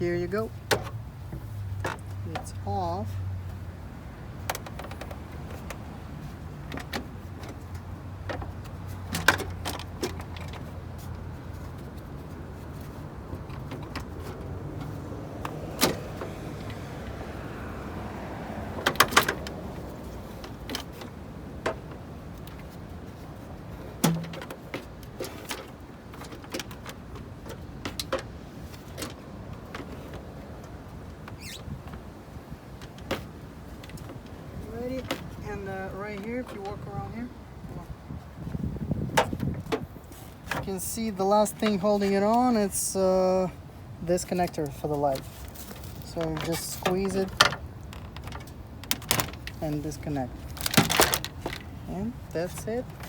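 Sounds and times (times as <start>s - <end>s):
plastic cover clicking and rattling: 24.0s - 28.3s, 45.8s - 49.6s, 50.5s - 51.7s.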